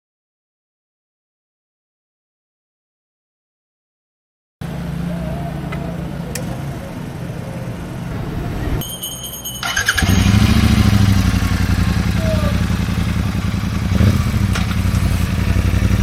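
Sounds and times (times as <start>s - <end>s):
motorcycle engine running: 9.6s - 16.0s.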